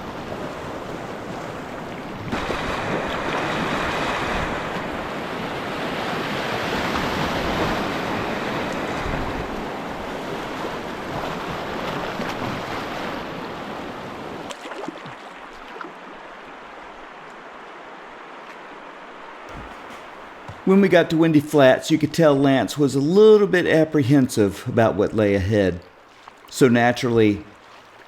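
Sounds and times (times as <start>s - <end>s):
wind buffeting microphone: 0.0s - 14.5s.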